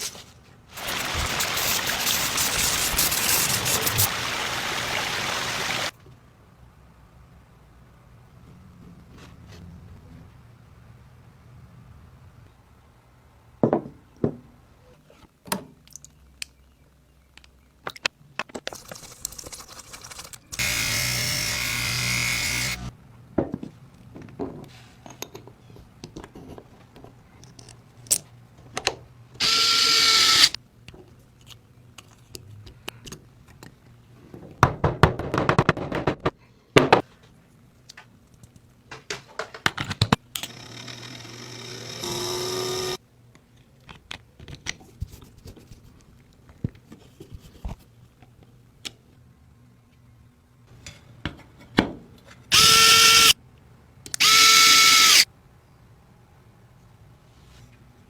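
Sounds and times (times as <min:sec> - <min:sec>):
small power tool whining: 0:20.6 - 0:22.9, 0:29.4 - 0:30.6, 0:40.4 - 0:43.0, 0:52.5 - 0:53.4, 0:54.2 - 0:55.2.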